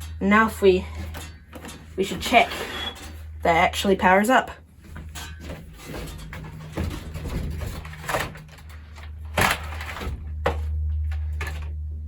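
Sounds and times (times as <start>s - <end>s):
steady low hum: 0.0s - 12.0s
rustling: 4.8s - 11.6s.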